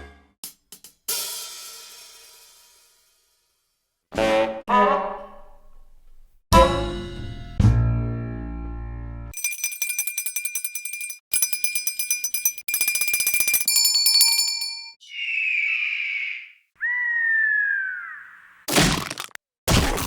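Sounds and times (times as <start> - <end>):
small bell rung rapidly: 9.3 - 15.0
wavering high shrill tone: 15.0 - 18.4
whistle-like tone sliding downward: 15.0 - 18.6.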